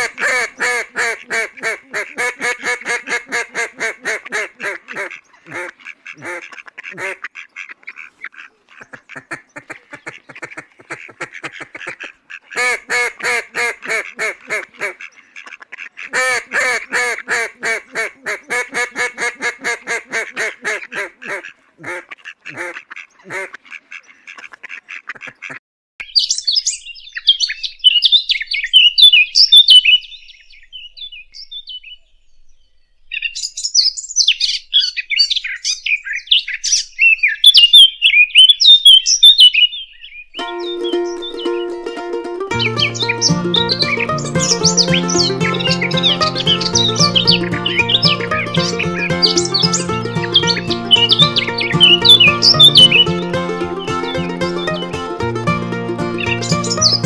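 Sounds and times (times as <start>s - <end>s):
ducks quacking: 0.0s - 25.6s, 40.4s - 57.0s
small birds chirping: 42.5s - 54.9s, 56.2s - 57.0s.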